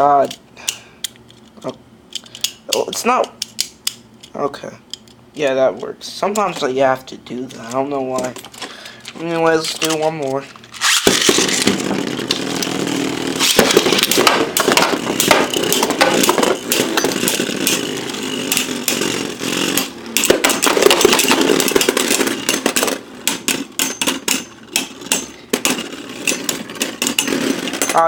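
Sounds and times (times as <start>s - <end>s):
spinning tops whirring and scraping: 5.8s - 28.0s
tops clashing with clicks: 19.7s - 28.0s.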